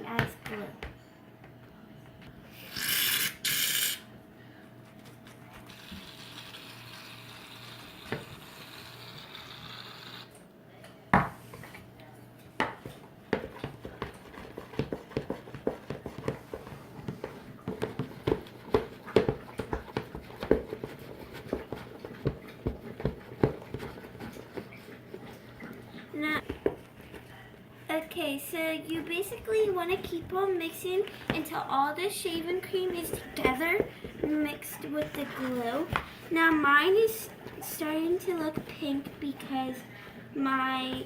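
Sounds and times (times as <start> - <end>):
aerosol can spraying: 2.7 - 4.0
spoon stirring in a bowl: 12.6 - 27.6, 29.0 - 37.7.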